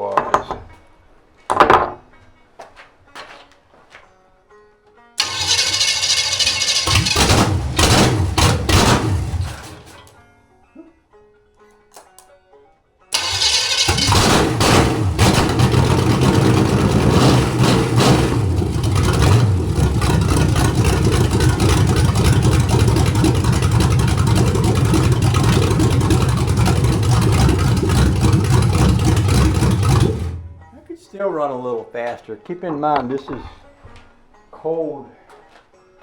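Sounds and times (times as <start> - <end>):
car engine starting and idling: 5.2 - 10.1, 13.1 - 30.7.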